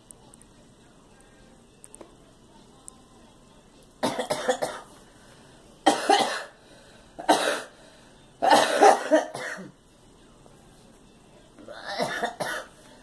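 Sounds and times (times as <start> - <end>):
girl coughing: 4.0 - 4.9, 5.9 - 6.6, 7.2 - 7.7, 8.4 - 9.7, 11.8 - 12.7.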